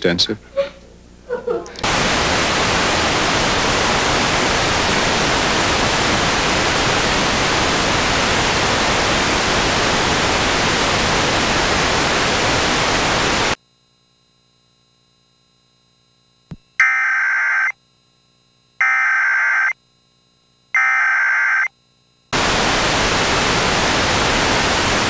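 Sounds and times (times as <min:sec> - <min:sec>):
television static hiss: 0:00.0 - 0:13.6, 0:22.2 - 0:25.0.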